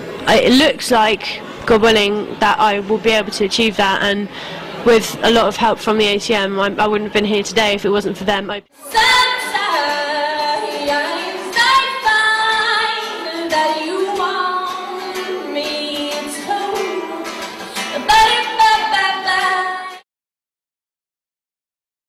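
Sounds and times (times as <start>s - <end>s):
woman singing: 8.8s - 20.0s.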